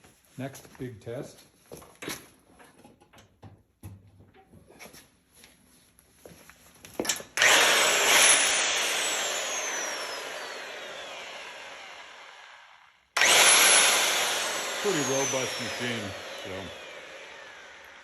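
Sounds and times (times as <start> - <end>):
drill whine coasting down: 7.2 - 18.0.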